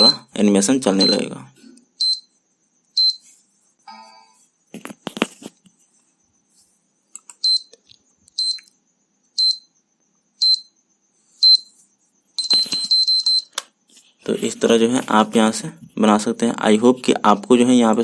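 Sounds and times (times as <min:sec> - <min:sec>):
short high electronic beeps: 0:00.0 - 0:00.3, 0:12.4 - 0:13.5.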